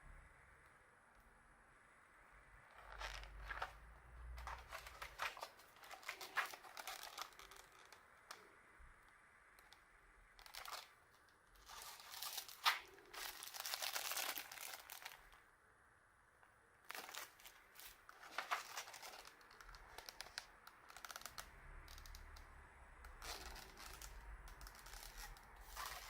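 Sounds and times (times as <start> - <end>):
packaging crinkling and tearing: 2.7 - 3.8, 4.4 - 8.4, 10.4 - 10.9, 11.6 - 15.4, 16.9 - 22.2, 23.1 - 26.0.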